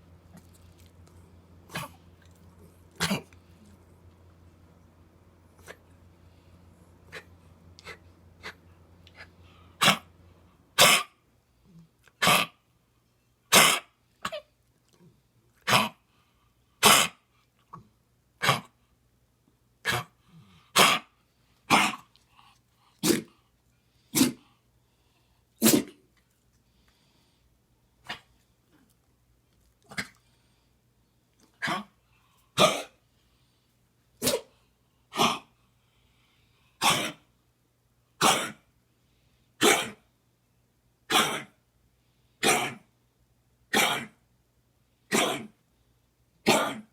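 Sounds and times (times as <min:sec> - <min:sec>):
dog coughing: 0:01.7 - 0:02.0, 0:02.9 - 0:03.4, 0:09.8 - 0:10.1, 0:10.8 - 0:11.2, 0:12.2 - 0:12.6, 0:13.5 - 0:14.5, 0:16.8 - 0:17.2, 0:18.4 - 0:18.7, 0:20.8 - 0:21.1, 0:21.7 - 0:22.0, 0:23.0 - 0:23.3, 0:24.1 - 0:24.4, 0:25.6 - 0:26.0, 0:31.6 - 0:32.0, 0:32.6 - 0:33.0, 0:34.2 - 0:34.5, 0:35.1 - 0:35.5, 0:36.8 - 0:37.3, 0:38.2 - 0:38.7, 0:39.6 - 0:40.0, 0:41.1 - 0:41.6, 0:42.4 - 0:42.9, 0:43.7 - 0:44.2, 0:45.1 - 0:45.6, 0:46.4 - 0:46.9.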